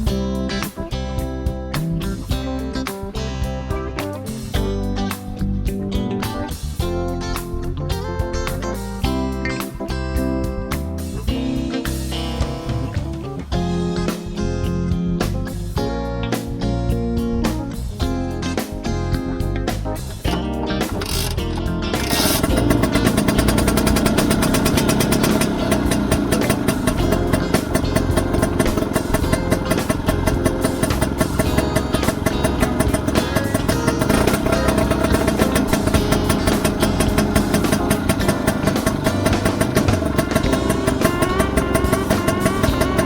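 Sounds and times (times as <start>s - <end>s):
two-stroke scooter engine running: 21.0s - 21.4s, 22.0s - 43.0s.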